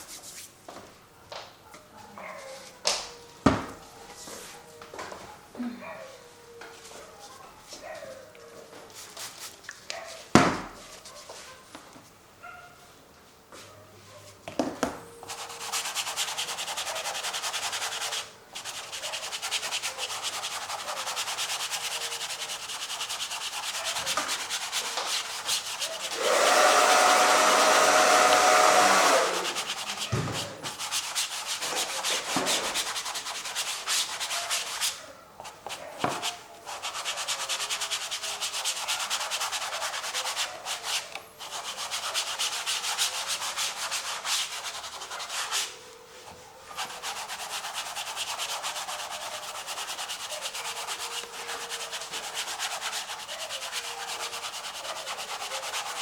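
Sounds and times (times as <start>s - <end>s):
paint scraping across canvas: 0.0s - 0.6s, 15.2s - 56.0s.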